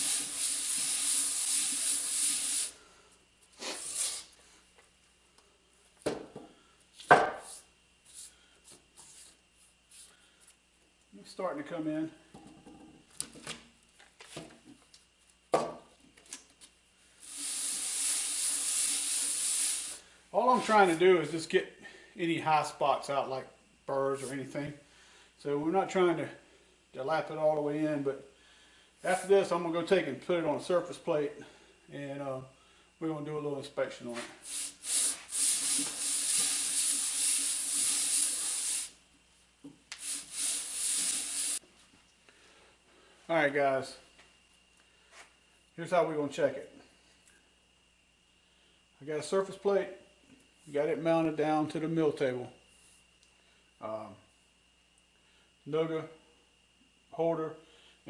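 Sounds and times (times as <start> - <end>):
gritty rubbing on sandpaper: 0.0 - 2.7, 34.4 - 38.9, 40.0 - 41.6.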